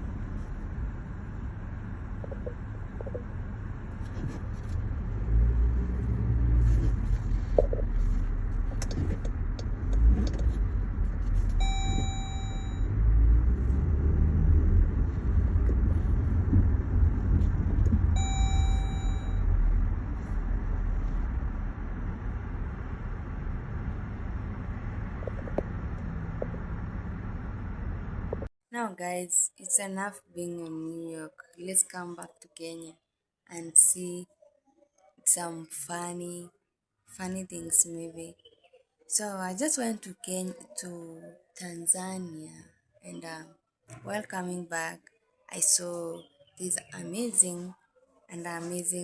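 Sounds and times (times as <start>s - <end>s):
road traffic rumble: 0.0s - 28.5s
steady pitched tone: 11.5s - 13.2s, 16.3s - 25.0s.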